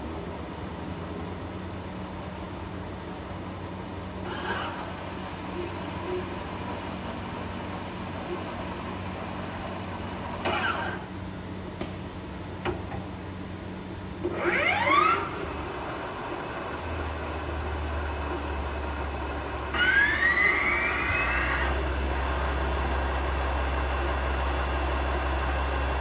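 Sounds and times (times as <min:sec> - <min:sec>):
machine low hum: 0:00.0 - 0:26.0
motors whining speeding up: 0:14.2 - 0:26.0.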